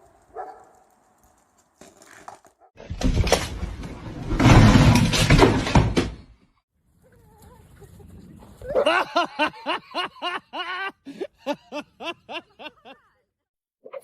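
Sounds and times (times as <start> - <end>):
person laughing: 8.7 - 13.2.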